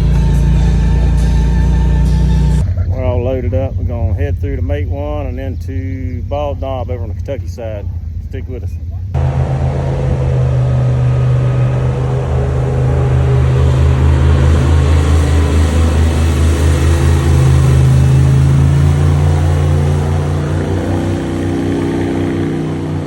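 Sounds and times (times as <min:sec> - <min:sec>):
utility vehicle engine running: 0:00.0 - 0:03.5, 0:09.2 - 0:23.0.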